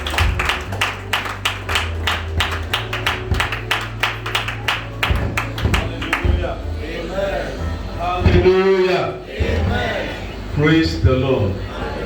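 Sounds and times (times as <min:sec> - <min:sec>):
congregation clapping rhythmically: 0:00.0 - 0:06.7.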